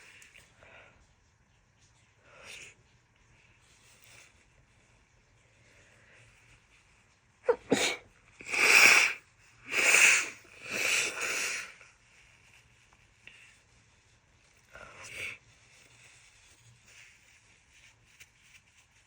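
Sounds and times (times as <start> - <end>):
woman sneezing: 7.5 - 10.4.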